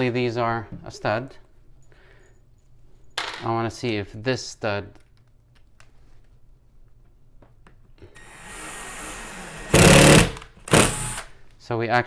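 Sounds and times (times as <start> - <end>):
power drill drilling into wall: 8.2 - 11.3.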